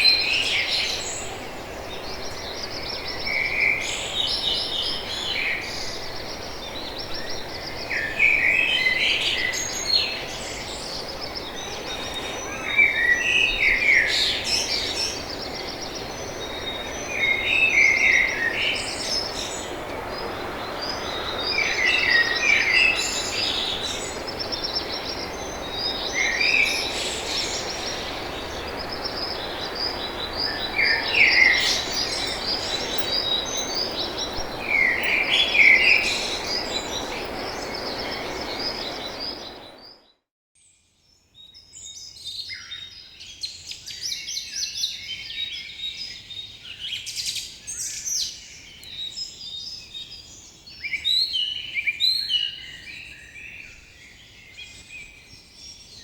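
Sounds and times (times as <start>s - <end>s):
steady background hiss: 0.0s - 39.8s
songbird trilled song: 0.0s - 40.1s
high bird chirps: 20.0s - 40.0s.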